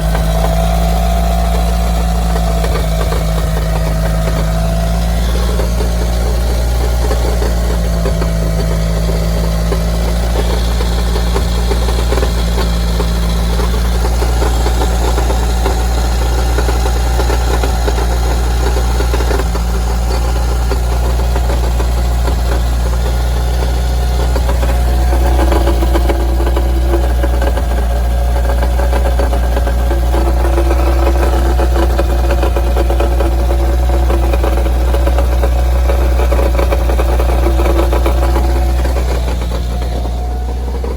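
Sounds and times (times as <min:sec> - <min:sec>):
car engine idling: 0:00.0 - 0:40.9
heavy knocking rattle: 0:00.0 - 0:40.9.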